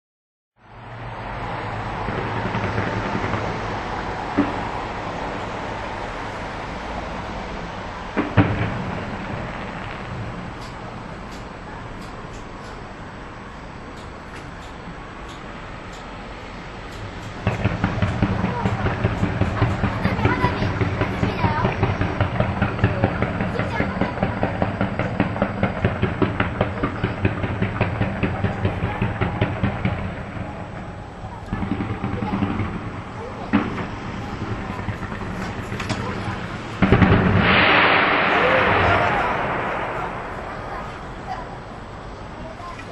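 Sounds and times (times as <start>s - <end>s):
low rushing: 0.6s - 42.9s
firework hissing sparks: 16.9s - 42.3s
sharp pop: 31.4s - 41.2s.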